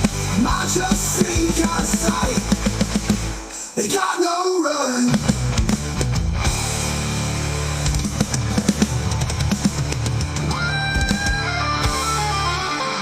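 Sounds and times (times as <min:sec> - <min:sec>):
distorted guitar and bass: 0:00.0 - 0:03.5, 0:05.1 - 0:13.0
drum kit hits: 0:05.2 - 0:12.2.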